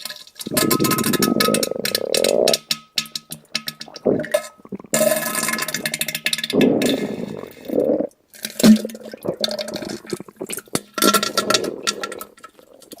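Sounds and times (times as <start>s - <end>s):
wet sputtering splatters: 8.6s - 13.0s.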